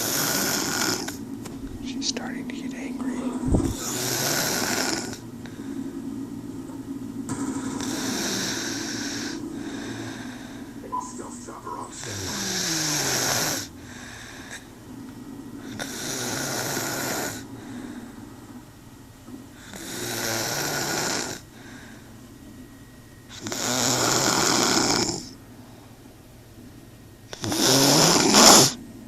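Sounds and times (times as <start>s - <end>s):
woman snoring heavily: 0.0s - 1.2s, 3.6s - 5.3s, 7.8s - 10.8s, 12.0s - 14.7s, 15.6s - 17.8s, 19.6s - 21.8s, 23.3s - 25.4s, 27.3s - 28.8s
quiet breathing: 0.0s - 6.4s, 7.4s - 18.8s, 19.5s - 26.2s.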